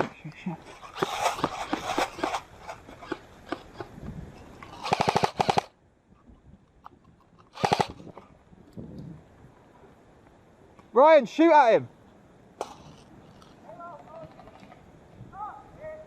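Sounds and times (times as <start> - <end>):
airsoft guns firing: 4.8 - 5.7, 7.6 - 8.0.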